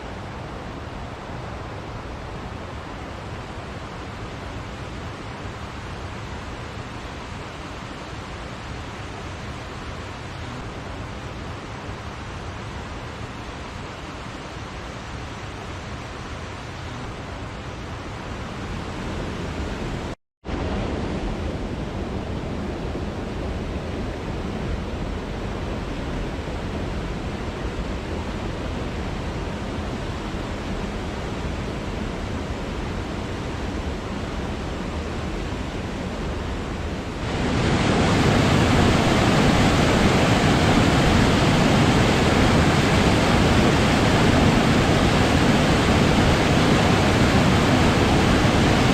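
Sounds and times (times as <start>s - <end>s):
waterfall rushing: 36.9s - 48.9s.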